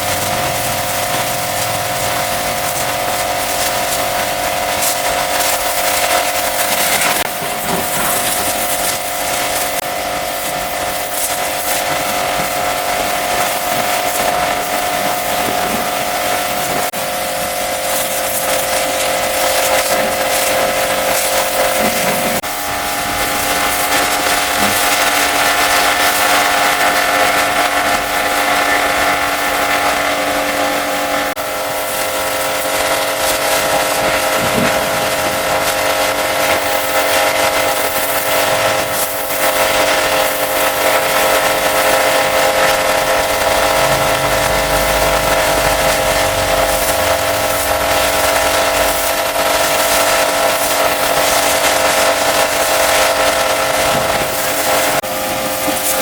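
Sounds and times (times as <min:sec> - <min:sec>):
pressure washer motor whine: 0:00.0 - 0:56.0
water jet hissing: 0:00.0 - 0:56.0.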